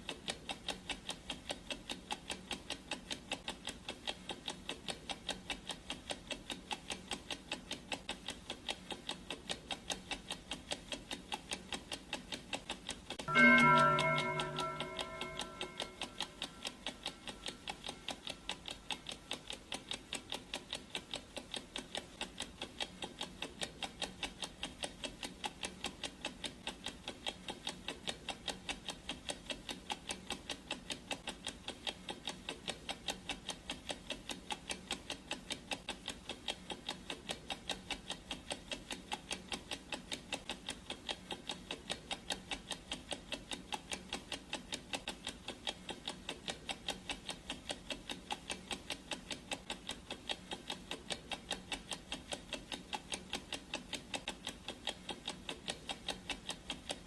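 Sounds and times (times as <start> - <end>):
clock ticking: 0.0 - 57.0
ringing tone: 13.3 - 17.3.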